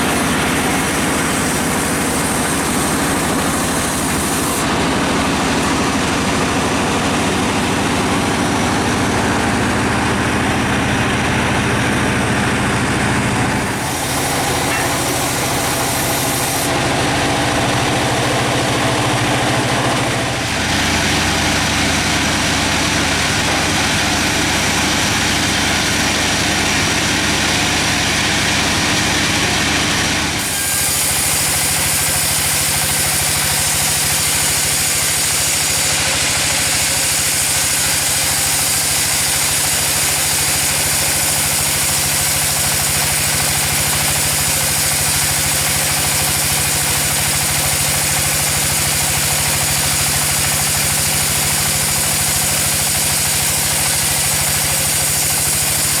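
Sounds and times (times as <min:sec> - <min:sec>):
sawmill engine running: 0:00.0 - 0:56.0.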